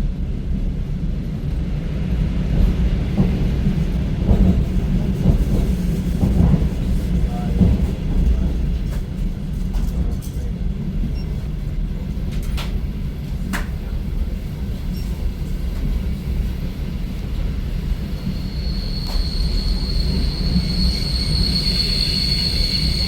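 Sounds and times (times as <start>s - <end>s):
train rumbling inside carriage: 0.0s - 23.0s
high wheel squeal: 17.7s - 23.0s.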